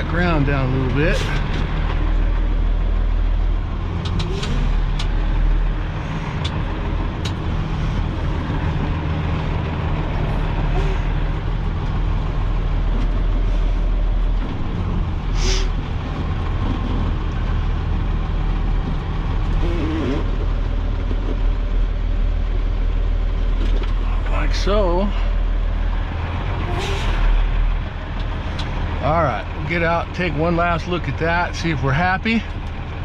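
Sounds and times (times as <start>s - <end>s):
diesel engine running at low revs: 0.0s - 33.0s.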